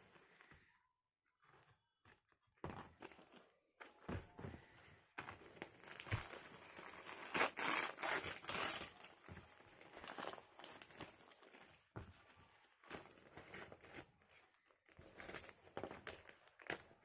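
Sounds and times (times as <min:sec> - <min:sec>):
plastic packaging cut and torn: 0:05.9 - 0:09.2.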